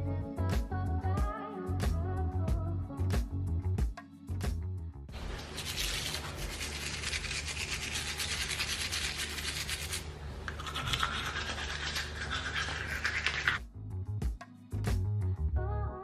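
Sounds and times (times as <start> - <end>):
scratchy brushing strokes: 5.2 - 13.6.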